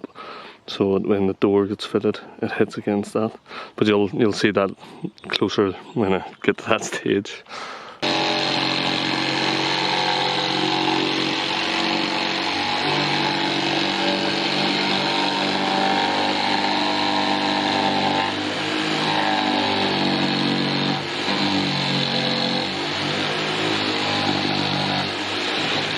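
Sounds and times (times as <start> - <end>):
power saw cutting plywood: 8.0 - 25.9.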